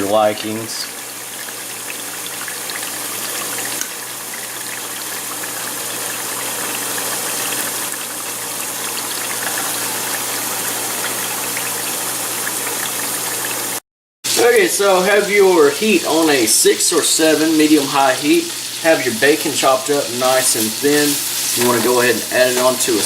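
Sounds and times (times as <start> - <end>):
meat sizzling in a pan: 1.0 - 23.0.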